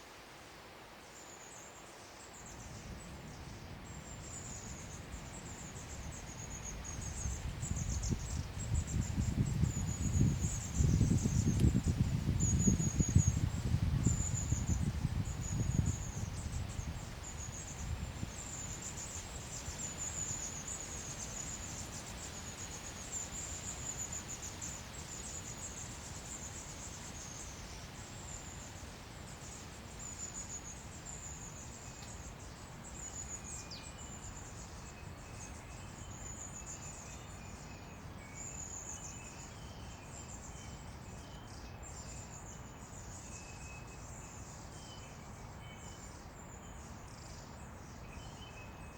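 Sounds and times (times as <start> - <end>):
steady hiss: 0.0 - 39.2.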